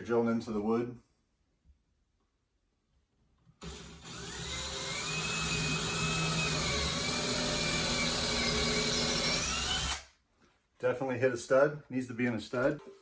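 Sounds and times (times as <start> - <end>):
power drill boring into wood: 3.6 - 10.1.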